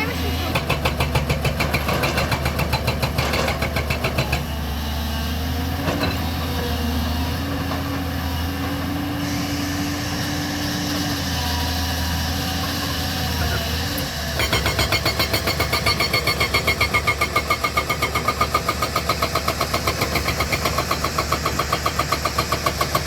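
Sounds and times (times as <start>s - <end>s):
diesel engine running: 0.0s - 23.0s
hydraulic breaker hammering rock: 0.4s - 4.5s, 13.4s - 23.0s.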